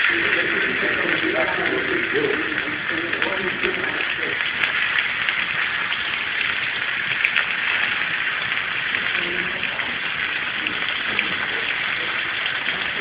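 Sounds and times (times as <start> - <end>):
fish sizzling in oil: 0.0 - 13.0.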